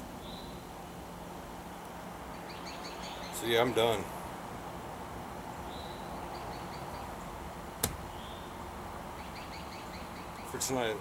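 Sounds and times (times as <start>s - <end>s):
sharp click: 7.8s - 8.1s
faint bird chirps: 9.2s - 10.6s.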